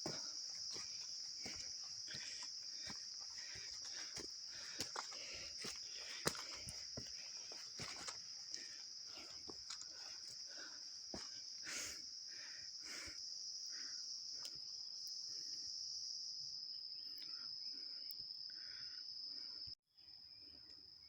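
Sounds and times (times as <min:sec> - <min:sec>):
footsteps on a trail: 0:00.0 - 0:12.0
insects droning: 0:00.0 - 0:21.0.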